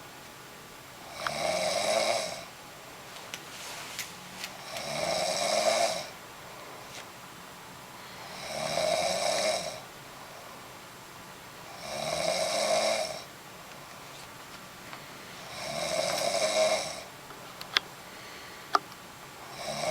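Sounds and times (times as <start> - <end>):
woman snoring: 1.0 - 2.5, 4.6 - 6.2, 8.2 - 9.8, 11.7 - 13.3, 15.4 - 17.1, 19.5 - 19.9.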